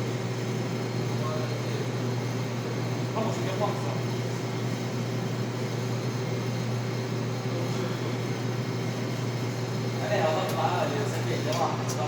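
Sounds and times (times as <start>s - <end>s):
espresso machine humming: 0.0s - 12.0s.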